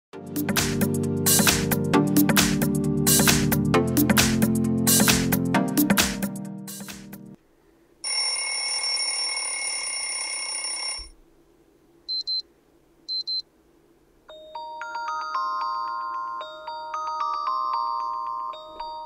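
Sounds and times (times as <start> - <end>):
chiming bell-like melody: 14.3 - 19.0.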